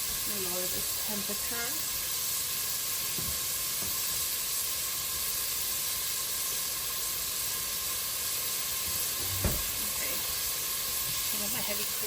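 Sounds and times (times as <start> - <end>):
onions sizzling in oil: 0.0 - 12.0
faint knocks: 9.2 - 9.7.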